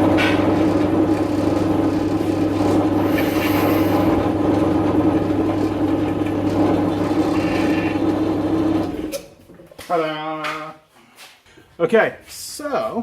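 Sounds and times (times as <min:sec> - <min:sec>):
metal lathe motor hum: 0:00.0 - 0:09.1.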